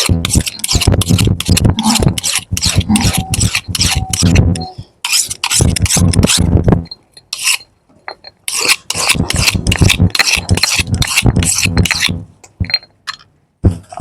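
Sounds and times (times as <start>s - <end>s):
knife blade rasping on sharpener: 0.0s - 4.4s, 5.0s - 6.5s, 7.4s - 7.6s, 8.5s - 12.2s.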